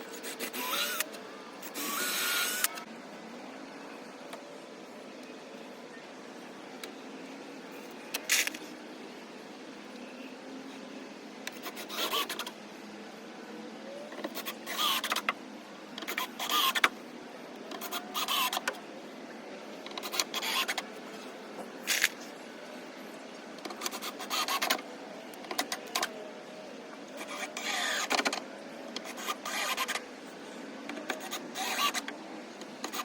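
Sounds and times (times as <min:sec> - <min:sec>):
power drill whining: 0:00.3 - 0:02.8.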